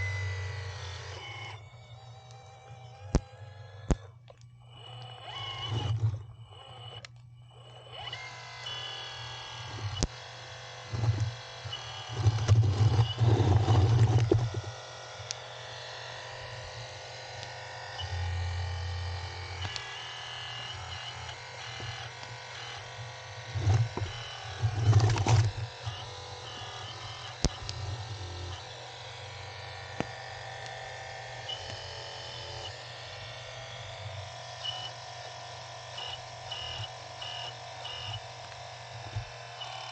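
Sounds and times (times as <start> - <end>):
electric hydraulic pump whirring: 0.0 - 39.9
sharp clicks: 0.8 - 9.0, 9.6 - 10.2, 19.5 - 22.8.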